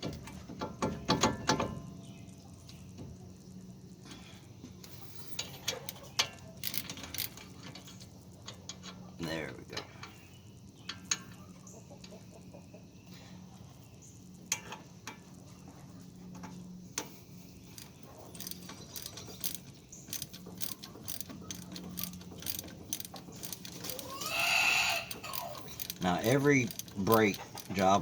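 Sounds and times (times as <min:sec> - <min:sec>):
ratchet wrench clicking: 0:06.2 - 0:09.0, 0:17.7 - 0:28.0.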